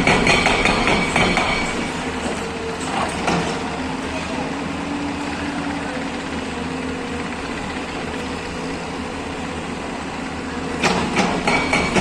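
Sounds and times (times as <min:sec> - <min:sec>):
excavator diesel engine running: 0:00.0 - 0:12.0.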